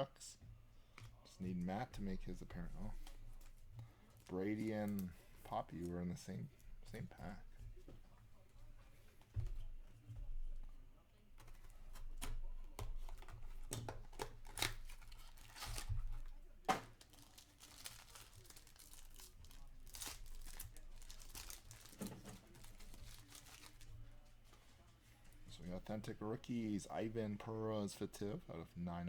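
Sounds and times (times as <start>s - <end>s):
foil wrapper tearing and crinkling: 13.1s - 15.9s, 16.8s - 23.9s.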